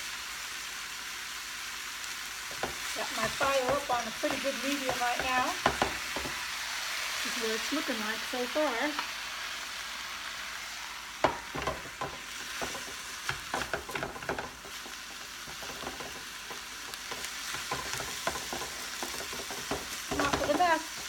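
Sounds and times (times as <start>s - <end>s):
meat sizzling in a frying pan: 0.0s - 21.0s
utensil scraping and knocking pan: 2.5s - 6.4s, 11.2s - 21.0s.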